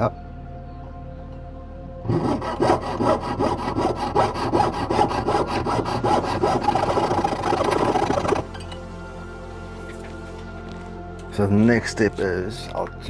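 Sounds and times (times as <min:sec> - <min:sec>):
jeweler's saw cutting metal: 0:02.1 - 0:08.4.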